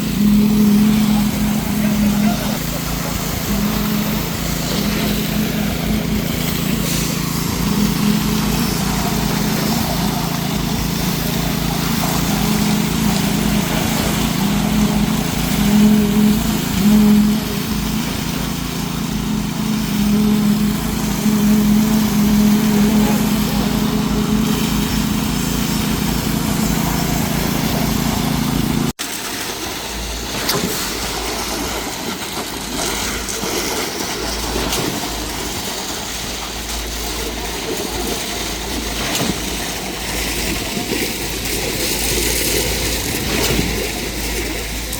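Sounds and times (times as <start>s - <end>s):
diesel engine humming: 0.0s - 29.0s.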